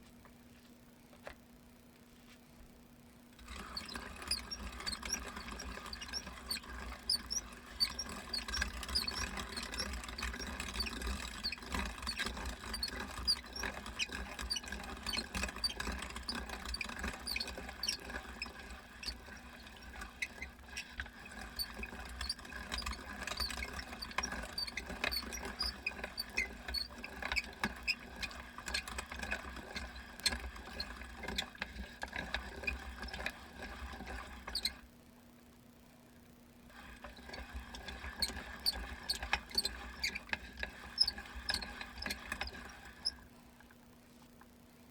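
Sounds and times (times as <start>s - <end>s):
hand-cranked meat grinder squeaking: 3.4s - 34.8s, 36.7s - 43.3s.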